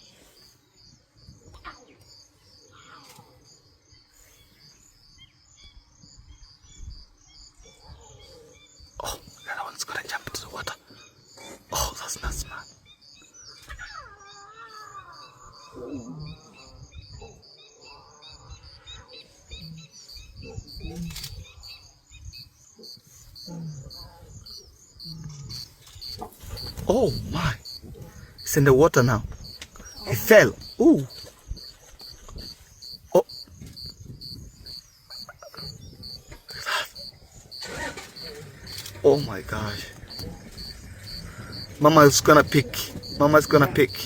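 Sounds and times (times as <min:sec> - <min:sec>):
small birds chirping: 0:00.0 - 0:44.0
lion cub crying: 0:13.5 - 0:21.8, 0:22.8 - 0:44.0.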